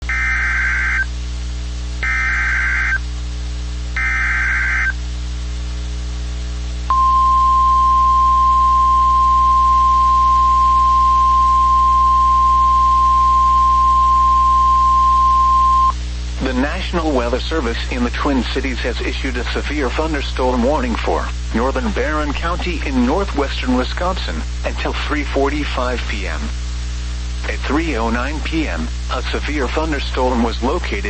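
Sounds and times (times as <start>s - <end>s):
harsh digital data screeches: 0.1s - 1.1s, 2.0s - 3.0s, 4.0s - 5.0s
steady warning alarm tone: 0.1s - 1.1s, 2.0s - 3.0s, 4.0s - 5.0s, 6.9s - 16.0s.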